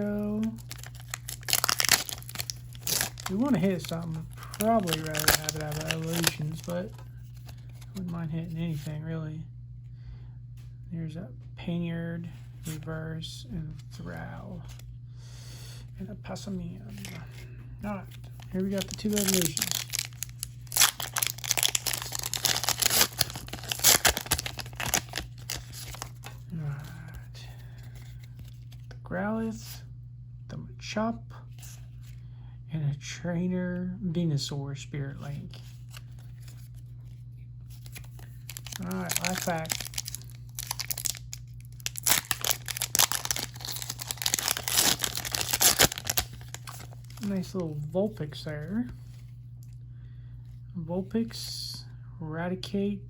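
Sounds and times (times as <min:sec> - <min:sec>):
foil wrapper crinkling and tearing: 0:00.1 - 0:08.0, 0:17.0 - 0:27.1, 0:37.7 - 0:47.6.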